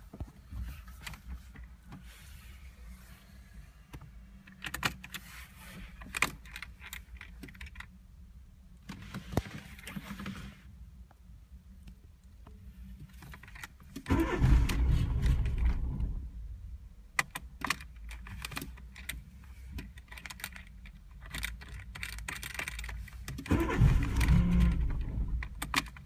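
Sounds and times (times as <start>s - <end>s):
steady low hum: 14.4s - 17.2s.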